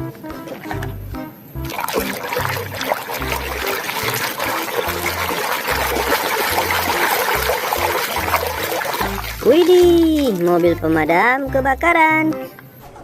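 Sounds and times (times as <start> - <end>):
water running and trickling: 0.4 - 11.9.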